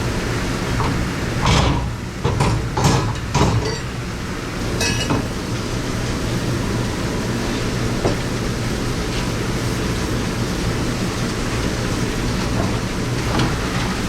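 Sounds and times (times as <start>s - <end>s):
steady mechanical hum: 0.0s - 14.0s
dishes clinking and clattering: 1.4s - 4.0s, 4.7s - 5.4s.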